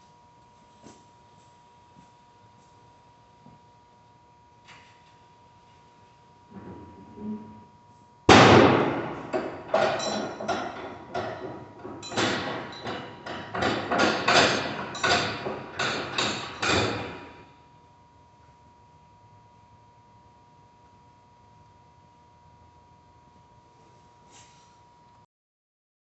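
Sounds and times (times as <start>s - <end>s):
sharp knocks and bangs: 8.3s - 17.4s.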